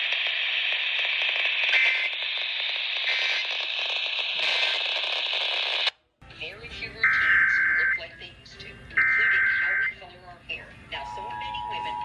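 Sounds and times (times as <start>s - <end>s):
radio hiss and crackle: 0.0s - 5.9s.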